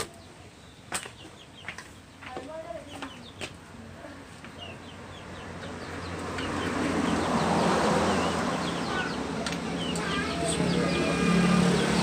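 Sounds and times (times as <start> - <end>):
birds chirping: 0.0 - 12.0
motorcycle engine revving: 5.1 - 12.0.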